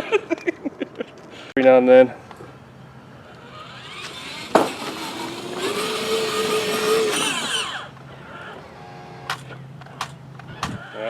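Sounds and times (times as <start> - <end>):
toy car motor whining: 3.2 - 9.4.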